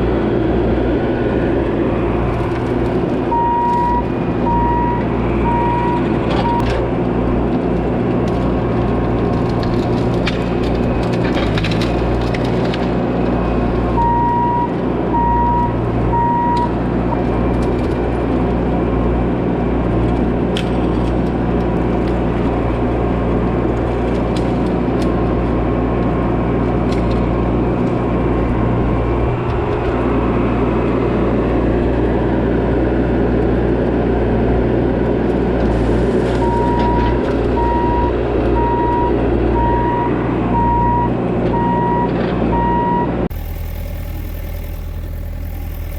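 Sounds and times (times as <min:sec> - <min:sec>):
excavator diesel engine running: 0:00.0 - 0:45.9
travel alarm beeping: 0:03.3 - 0:06.6, 0:14.0 - 0:16.7, 0:36.4 - 0:45.9.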